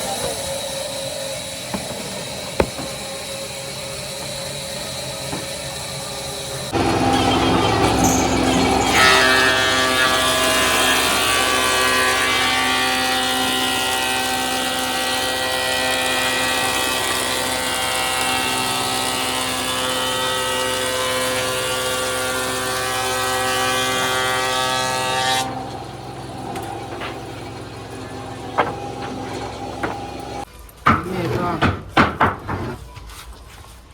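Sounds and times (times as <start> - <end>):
hissing noise: 0.0 - 7.2
motor-driven machine running: 0.0 - 30.5.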